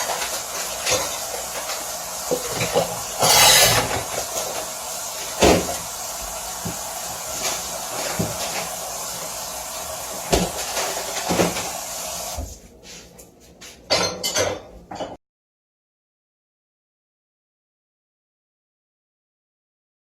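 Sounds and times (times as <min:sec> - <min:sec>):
pots and dishes clanking: 0:02.3 - 0:04.6, 0:13.9 - 0:15.2.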